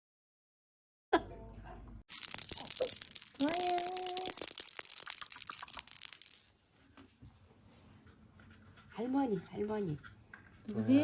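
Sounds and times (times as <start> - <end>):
rattle shaken rapidly: 2.1 - 6.5.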